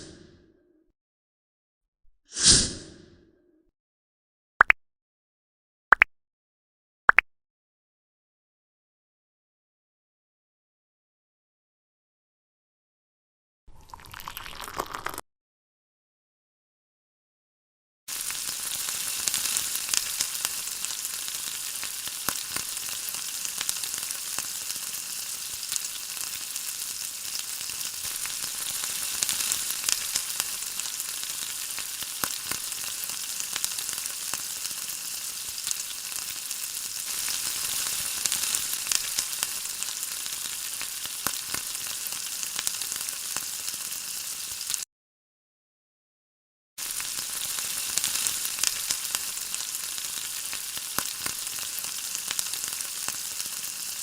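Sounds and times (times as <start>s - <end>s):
food sizzling and crackling in oil: 13.8s - 15.2s, 18.1s - 44.9s, 46.8s - 54.0s.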